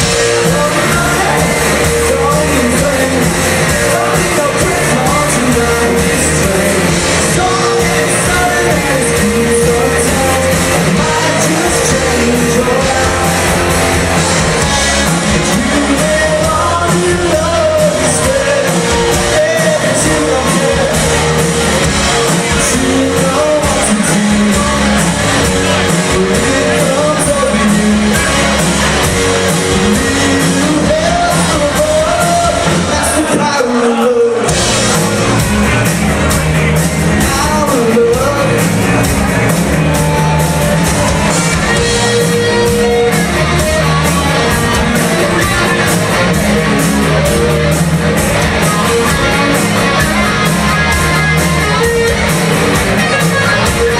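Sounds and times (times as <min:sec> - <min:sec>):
live rock band playing: 0:00.0 - 0:53.9
person singing: 0:00.0 - 0:53.9.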